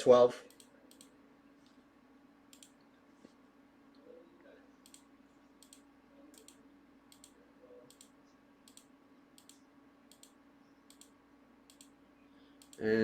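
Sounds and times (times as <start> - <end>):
low steady hum: 0.0 - 13.0
computer mouse clicking: 0.5 - 1.1, 2.5 - 2.8, 4.8 - 12.0, 12.6 - 12.8.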